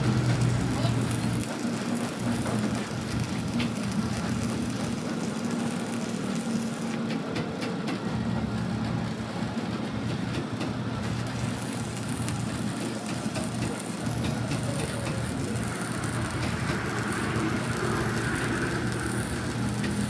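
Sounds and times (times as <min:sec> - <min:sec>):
welding arc crackling: 0:00.0 - 0:07.0, 0:11.3 - 0:20.0.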